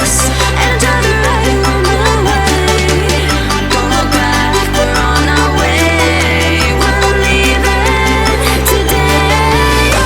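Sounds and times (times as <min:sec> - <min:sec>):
electronic pop music: 0:00.0 - 0:10.0.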